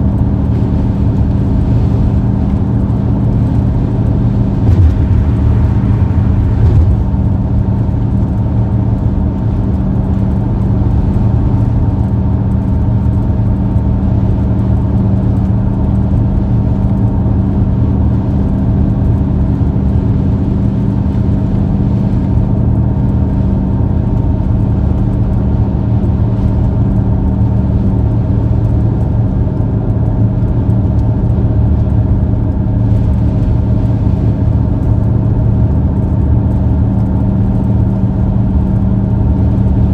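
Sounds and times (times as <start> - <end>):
car engine hum: 0.0 - 39.9
road noise: 0.0 - 39.9.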